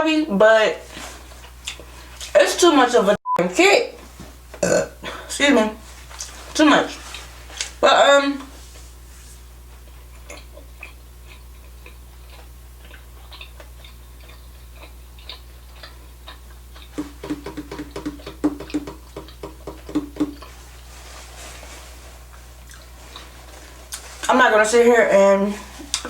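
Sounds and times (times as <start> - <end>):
steady low hum: 0.0 - 26.0
person chewing: 0.9 - 2.4, 6.1 - 7.8, 9.7 - 24.3, 25.6 - 26.0
mouth clicks: 15.2 - 20.5.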